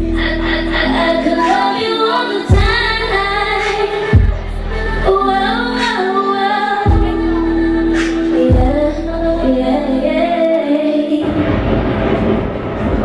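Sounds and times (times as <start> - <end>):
woman singing: 0.0 - 11.3
deep bass hits: 11.2 - 13.0.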